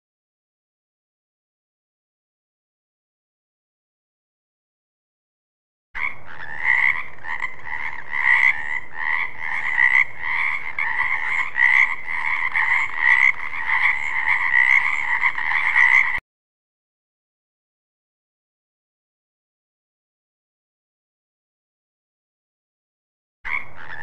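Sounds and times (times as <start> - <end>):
frogs croaking: 6.0 - 16.2, 23.5 - 24.0.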